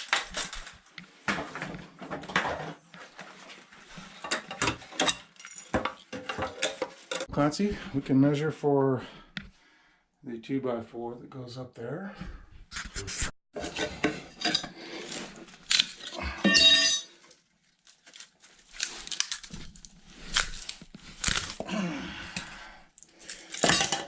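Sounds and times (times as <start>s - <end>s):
tools clattering and clinking: 0.0s - 7.3s, 13.6s - 17.4s, 23.4s - 24.0s.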